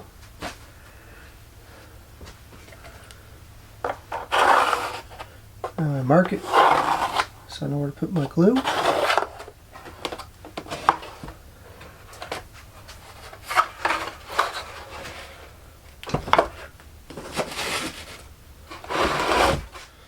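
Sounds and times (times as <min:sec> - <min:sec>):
scraping on wood: 0:03.8 - 0:07.4, 0:08.2 - 0:15.6, 0:16.3 - 0:20.0.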